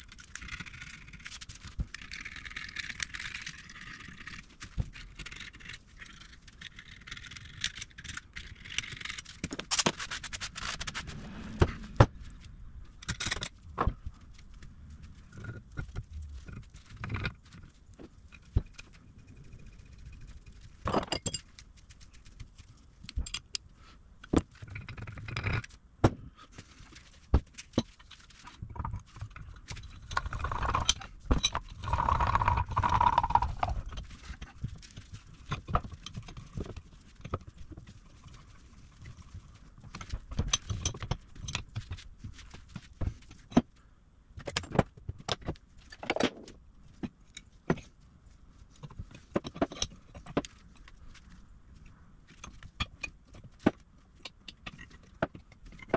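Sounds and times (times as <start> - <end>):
continuous scraping: 0.0 - 55.9
metal tools clinking and knocking: 20.9 - 21.5.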